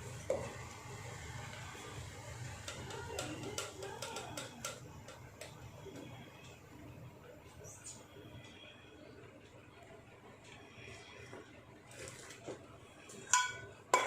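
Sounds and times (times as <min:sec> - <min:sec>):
spoon tapping a dish: 0:02.6 - 0:05.6, 0:13.3 - 0:14.0.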